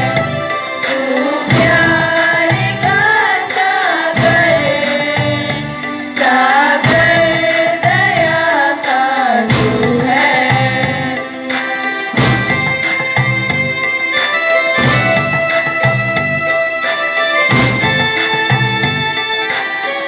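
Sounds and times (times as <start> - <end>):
heavy beat: 0.0 - 8.6, 9.5 - 20.0
person singing: 0.0 - 13.4
instrumental accompaniment: 0.0 - 20.0.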